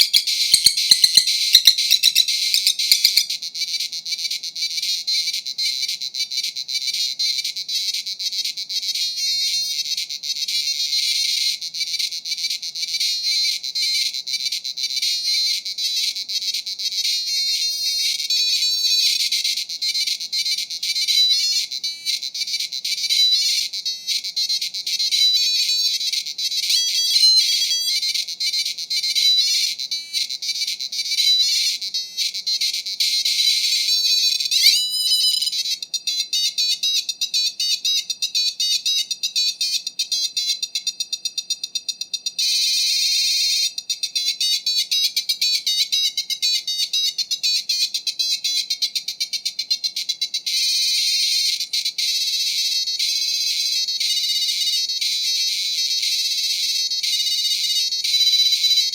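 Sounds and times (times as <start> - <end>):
beeping computer speaker music: 0.0 - 3.3, 34.4 - 35.6.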